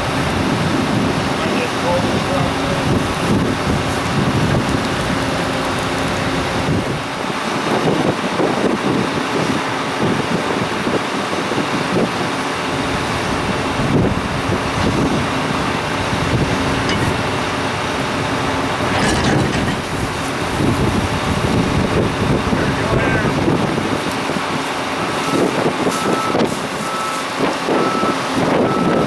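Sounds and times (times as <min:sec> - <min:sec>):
vehicle running: 0:00.0 - 0:29.0.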